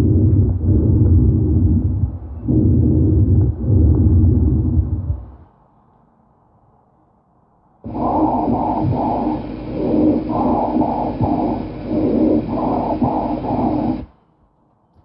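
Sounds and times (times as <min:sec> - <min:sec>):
lung sounds through stethoscope: 0:00.0 - 0:05.4, 0:07.8 - 0:14.1
steady tone: 0:07.9 - 0:14.1.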